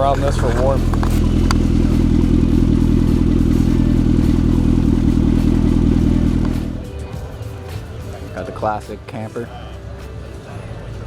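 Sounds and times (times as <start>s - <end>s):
car engine idling: 0.0s - 8.8s.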